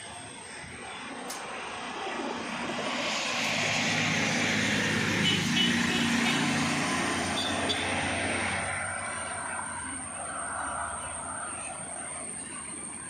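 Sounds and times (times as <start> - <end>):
vehicle passing by: 1.5 - 13.0.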